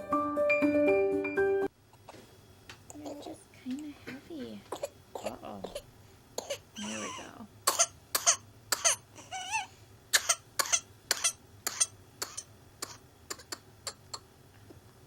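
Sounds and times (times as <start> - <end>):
person coughing fit: 10.2 - 14.0.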